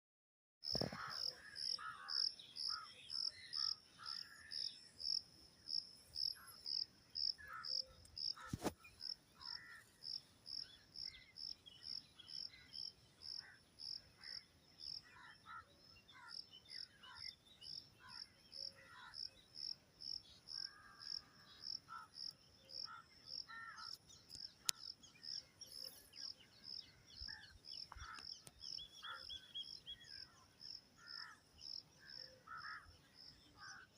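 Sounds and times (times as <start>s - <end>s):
insect chirping: 0.7s - 33.9s
short bird calls: 7.4s - 9.9s.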